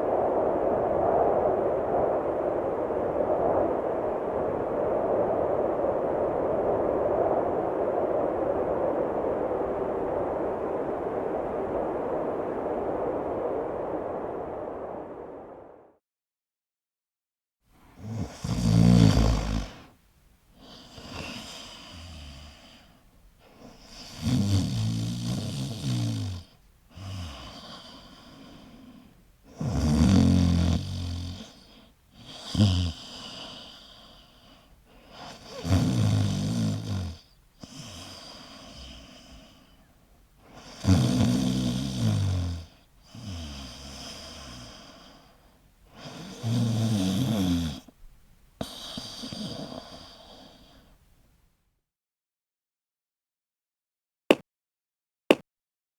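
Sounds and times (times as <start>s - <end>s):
person snoring: 18.0s - 19.9s, 23.8s - 34.3s, 35.1s - 39.8s, 40.5s - 45.3s, 45.9s - 47.9s, 48.6s - 50.9s.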